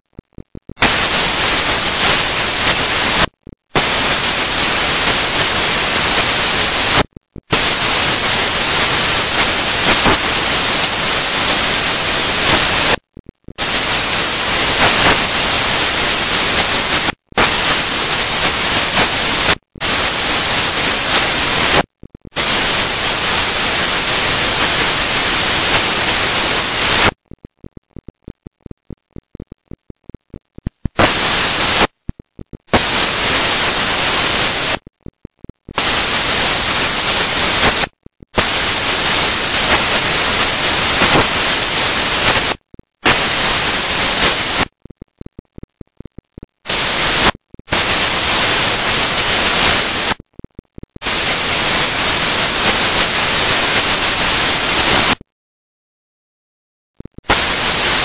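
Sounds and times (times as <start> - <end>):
white noise static hissing: 0.0 - 55.2, 57.0 - 58.0.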